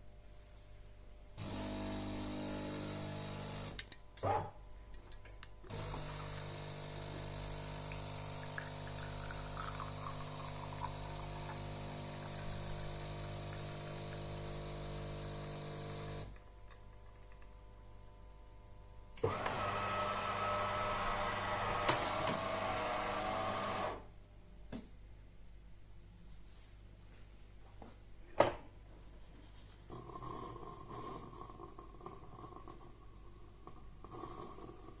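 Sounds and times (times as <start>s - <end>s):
coffee machine pump running: 1.4s - 3.8s, 5.7s - 16.4s, 19.2s - 24.0s.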